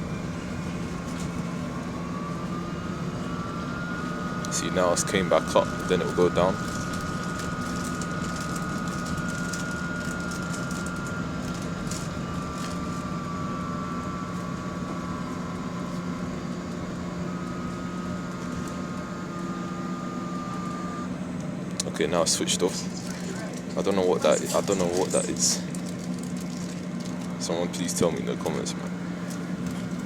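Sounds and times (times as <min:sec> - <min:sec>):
high whining tone: 0:00.0 - 0:21.5
bus low drone: 0:00.0 - 0:30.0.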